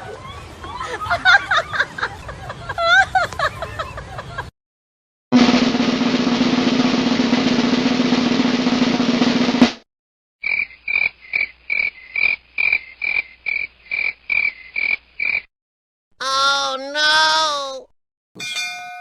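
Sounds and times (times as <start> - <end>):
snare drum roll: 5.4 - 9.8.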